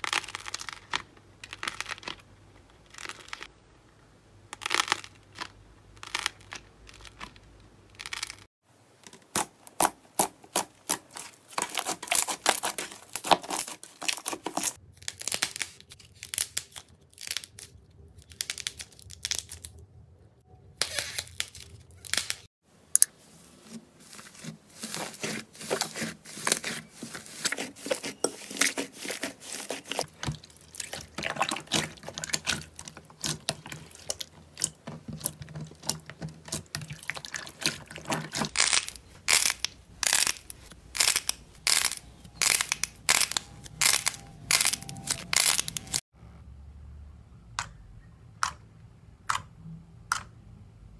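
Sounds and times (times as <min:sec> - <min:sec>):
slime squelching and popping: 0:24.0 - 0:46.0.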